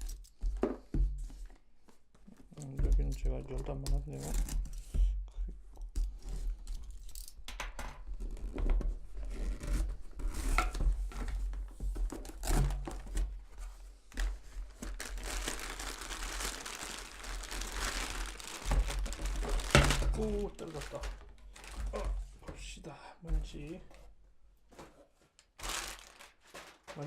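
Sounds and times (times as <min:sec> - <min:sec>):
packaging tearing and crinkling: 0:14.2 - 0:22.1, 0:25.5 - 0:27.0.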